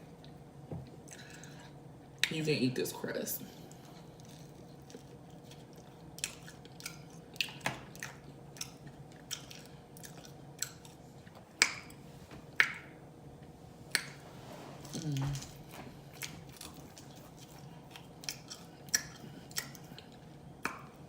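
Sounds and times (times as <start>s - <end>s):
person chewing: 3.7s - 12.0s, 14.8s - 21.0s.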